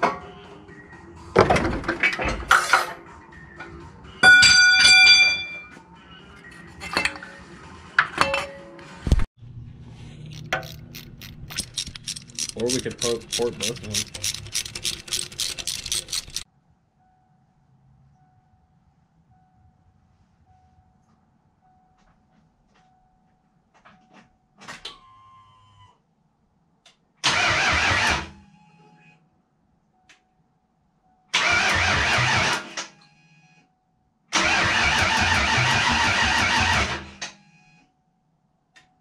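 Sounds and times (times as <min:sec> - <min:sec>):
engine cranked by starter: 0:11.5 - 0:16.4, 0:27.2 - 0:28.4, 0:31.4 - 0:32.7, 0:34.4 - 0:37.2.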